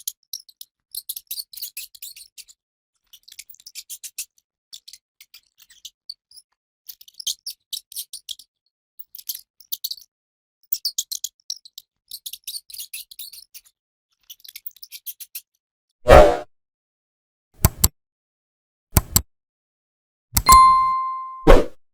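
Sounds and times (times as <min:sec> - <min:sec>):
rat clicking and squeaking: 0:00.3 - 0:10.1, 0:10.7 - 0:15.5.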